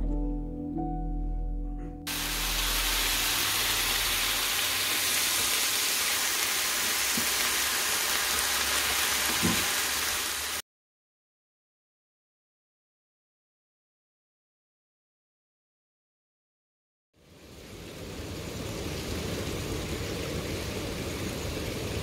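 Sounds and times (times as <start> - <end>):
music: 0.0 - 4.0
steady hiss: 2.1 - 10.6, 17.2 - 22.0.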